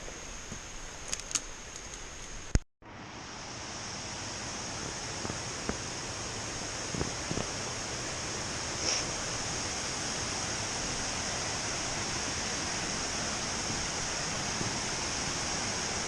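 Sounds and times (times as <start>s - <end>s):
water rushing: 2.9s - 16.0s.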